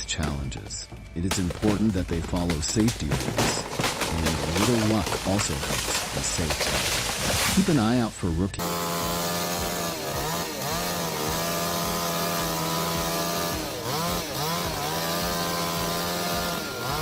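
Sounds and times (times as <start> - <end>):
chainsaw engine running: 1.2 - 17.0.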